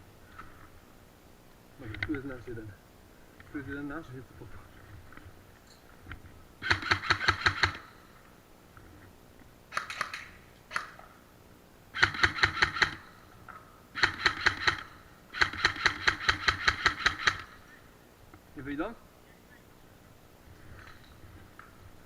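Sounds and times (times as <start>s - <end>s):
airsoft gun firing bursts: 6.6s - 8.0s, 9.7s - 11.0s, 12.0s - 13.2s, 14.0s - 17.7s.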